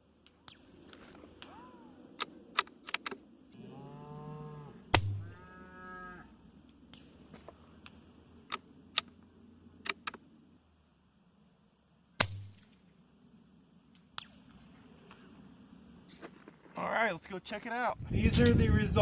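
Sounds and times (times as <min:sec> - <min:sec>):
rifle bolt clicks: 0:02.2 - 0:03.2, 0:08.5 - 0:10.2
suppressed rifle shot: 0:04.9 - 0:05.4, 0:12.2 - 0:12.9, 0:14.0 - 0:15.3.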